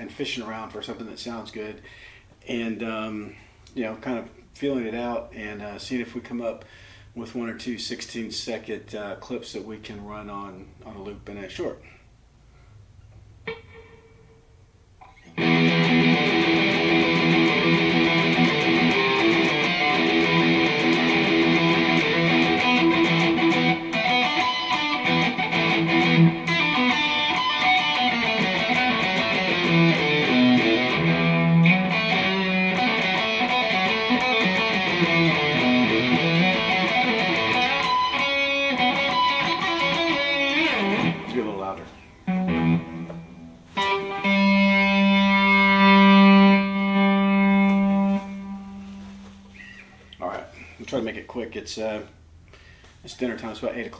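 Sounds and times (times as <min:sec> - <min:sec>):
electric guitar playing lead lines: 0:13.4 - 0:14.5, 0:15.1 - 0:49.5.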